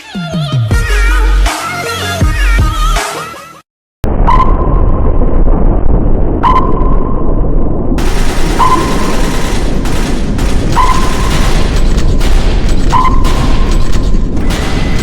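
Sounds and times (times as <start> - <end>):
battle rumble with booms: 4.0 - 15.0
short beep: 4.2 - 5.0, 6.4 - 7.2, 12.9 - 13.3
gunfire bursts: 8.0 - 15.0.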